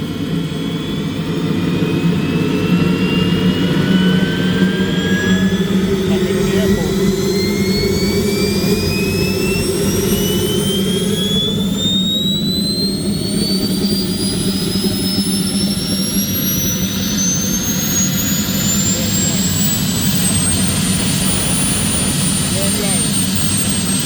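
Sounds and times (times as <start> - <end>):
gas turbine spooling up: 0.0 - 24.0.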